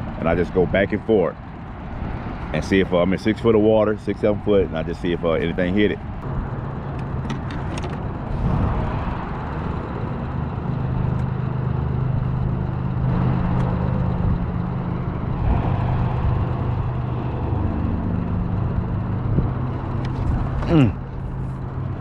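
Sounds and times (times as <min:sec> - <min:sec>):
electric trolling motor humming: 0:05.5 - 0:22.0.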